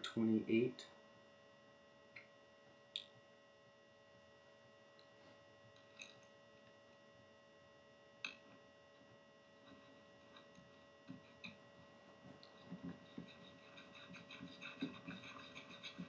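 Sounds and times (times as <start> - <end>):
mains hum: 0.0 - 16.0.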